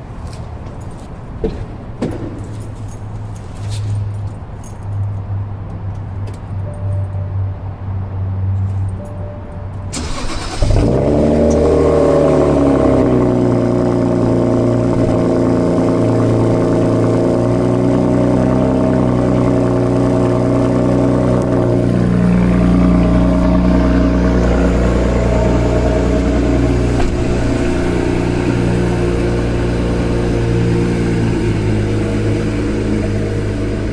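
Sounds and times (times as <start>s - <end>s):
car engine starting and idling: 8.7s - 33.9s.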